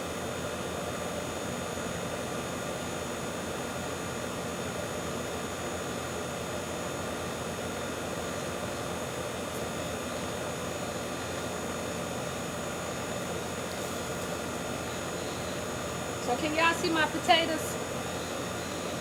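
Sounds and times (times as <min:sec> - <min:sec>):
faint hum of constant tones: 0:00.0 - 0:19.0
steady hiss: 0:09.5 - 0:19.0.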